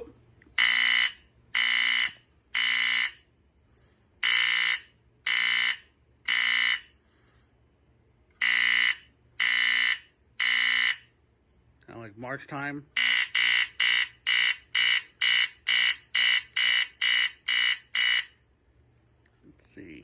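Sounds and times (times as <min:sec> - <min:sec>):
smoke alarm beeping: 0:00.5 - 0:03.2, 0:04.2 - 0:07.0, 0:08.4 - 0:11.1, 0:13.0 - 0:18.4.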